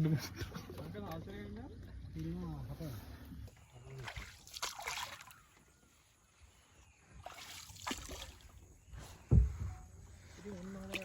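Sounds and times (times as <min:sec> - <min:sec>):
paddle splashing water: 0:03.5 - 0:05.7, 0:07.1 - 0:09.6, 0:10.2 - 0:11.0.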